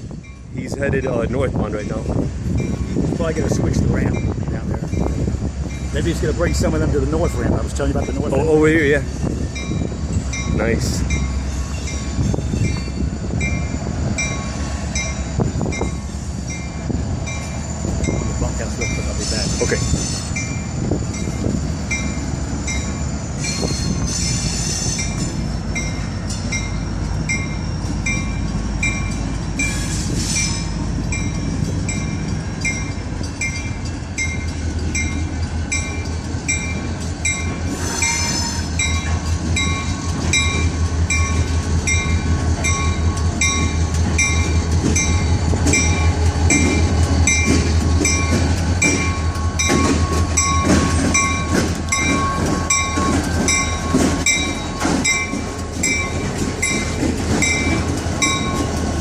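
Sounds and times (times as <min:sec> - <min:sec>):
diesel locomotive engine rumble: 0:00.0 - 0:59.0
locomotive bell ringing: 0:00.0 - 0:59.0
rail cars rolling: 0:00.0 - 0:59.0.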